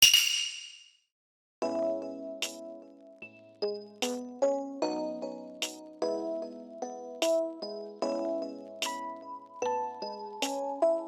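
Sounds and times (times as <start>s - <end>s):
sharp metallic ding: 0.0s - 0.9s.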